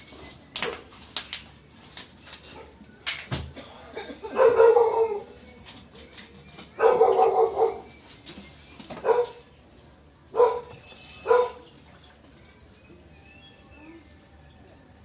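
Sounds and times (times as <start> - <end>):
dog barking: 4.3 - 5.3, 6.8 - 7.9, 9.0 - 9.4, 10.3 - 11.6.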